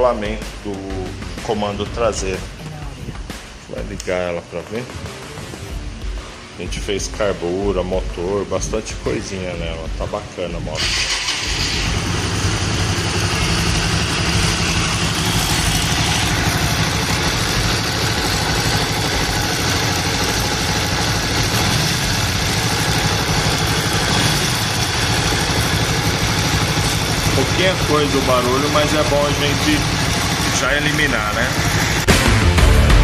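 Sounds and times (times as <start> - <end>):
motorcycle engine idling: 10.8 - 33.0
noise from top of engine: 10.8 - 33.0.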